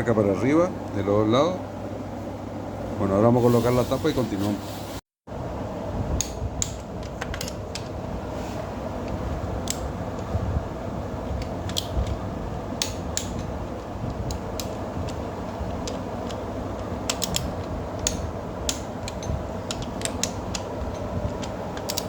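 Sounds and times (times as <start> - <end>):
metal tools clicking and tapping: 14.1 - 22.0.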